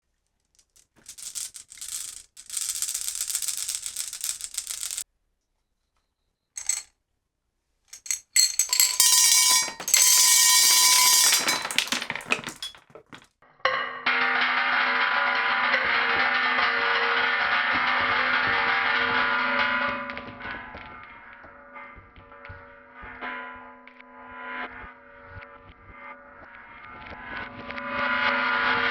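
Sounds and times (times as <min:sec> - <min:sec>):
marbles rolling down track: 0:00.7 - 0:05.0, 0:06.6 - 0:06.8, 0:08.0 - 0:13.2.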